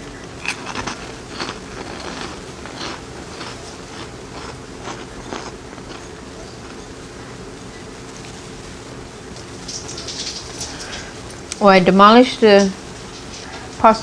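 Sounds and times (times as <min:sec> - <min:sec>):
steady low hum: 0:00.0 - 0:14.0
chewing pasta: 0:00.2 - 0:06.9.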